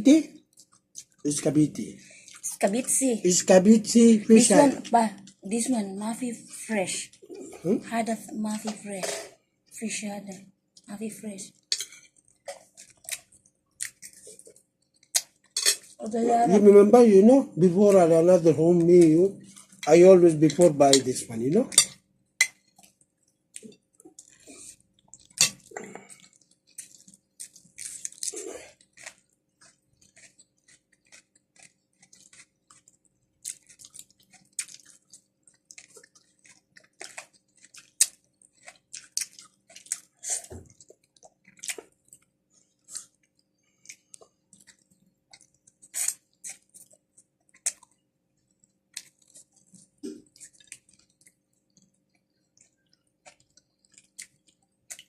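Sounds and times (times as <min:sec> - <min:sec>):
person chewing wetly: 0:00.4 - 0:01.3, 0:11.6 - 0:16.0, 0:18.9 - 0:55.0.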